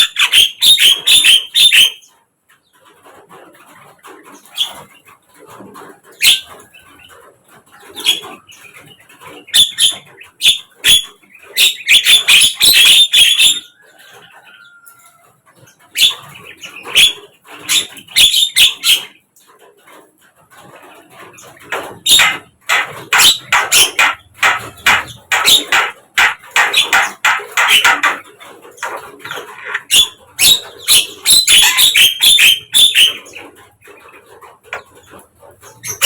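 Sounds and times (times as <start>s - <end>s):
myna bird harsh chattering calls: 0.0s - 2.1s, 21.2s - 36.0s.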